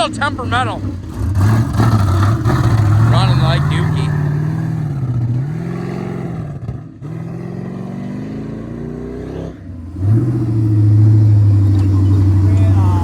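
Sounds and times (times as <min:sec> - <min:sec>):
people talking: 0:00.0 - 0:00.8, 0:03.1 - 0:04.1, 0:12.0 - 0:13.0
truck engine revving: 0:00.0 - 0:13.0.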